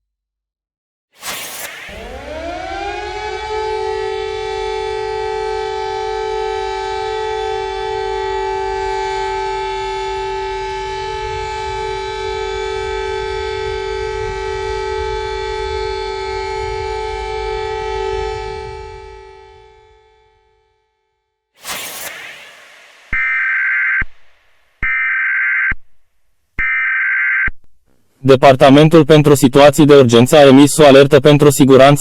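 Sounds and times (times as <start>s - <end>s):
low rumble: 1.2s - 20.4s, 21.6s - 24.8s
civil defence siren: 1.2s - 25.7s.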